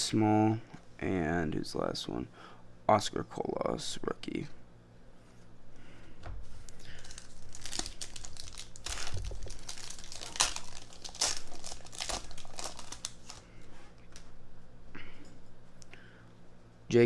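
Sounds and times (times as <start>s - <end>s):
plastic wrapper tearing and crinkling: 6.8s - 13.5s.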